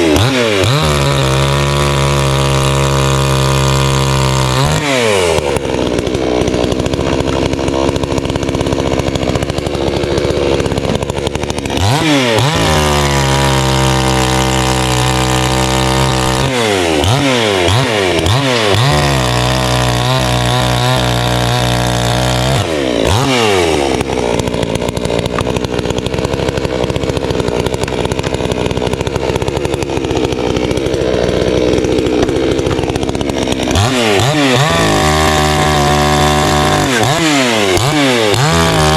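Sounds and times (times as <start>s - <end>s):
chainsaw cutting logs: 0.0s - 38.9s.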